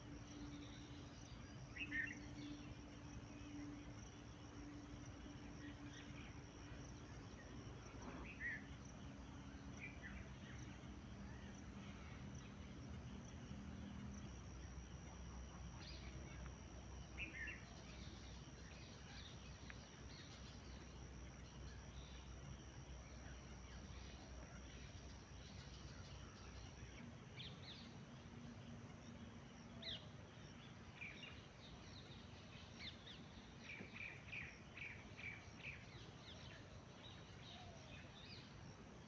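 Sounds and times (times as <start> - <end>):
background hiss: 0.0 - 39.0.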